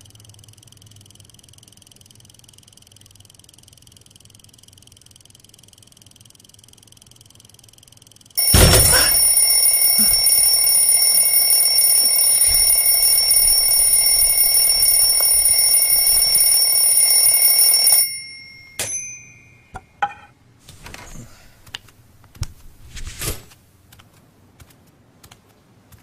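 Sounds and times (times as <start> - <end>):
alarm clock ringing: 8.4 - 19.8.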